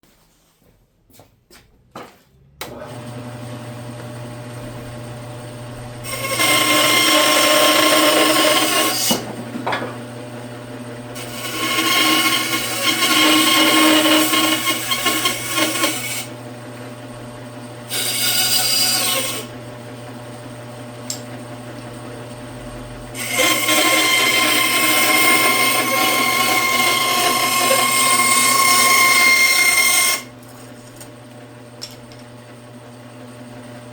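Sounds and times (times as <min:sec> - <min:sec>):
scroll saw humming: 0:02.6 - 0:09.3, 0:10.0 - 0:31.4
saw blade cutting wood: 0:06.0 - 0:10.0, 0:11.1 - 0:16.3, 0:17.9 - 0:19.5, 0:23.2 - 0:30.3.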